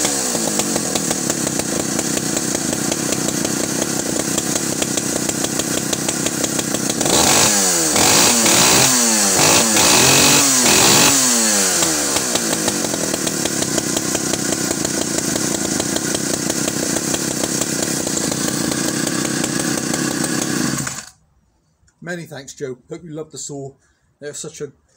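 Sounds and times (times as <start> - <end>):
chainsaw engine idling and revving: 0.0 - 21.2.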